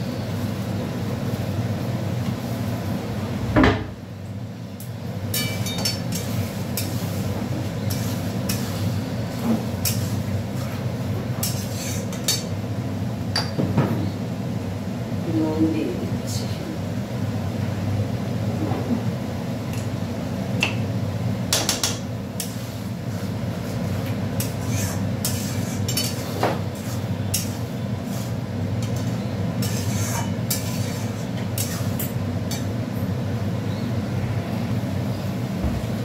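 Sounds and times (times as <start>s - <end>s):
metal spatula scraping a pan: 7.8s - 10.2s, 11.4s - 12.4s, 24.4s - 32.7s.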